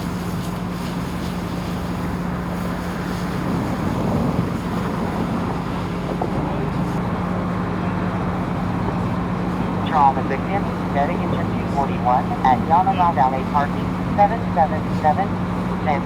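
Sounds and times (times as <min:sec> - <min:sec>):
vehicle engine hum: 0:00.0 - 0:16.0.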